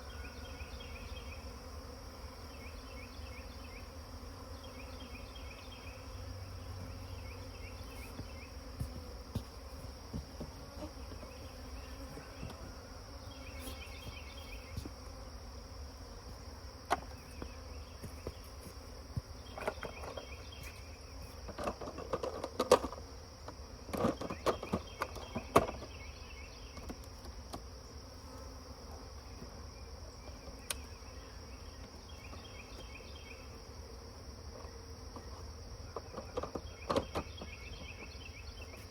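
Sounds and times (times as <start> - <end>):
bee swarm buzzing: 0.0 - 26.2, 27.2 - 38.9
knocks and clatter of hive parts: 8.1 - 11.4, 16.9 - 26.0, 34.6 - 38.2.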